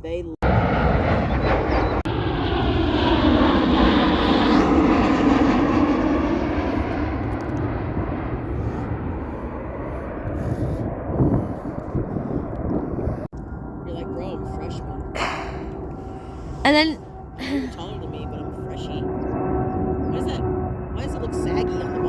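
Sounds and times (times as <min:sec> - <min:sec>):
airliner engines passing: 0:00.0 - 0:22.0.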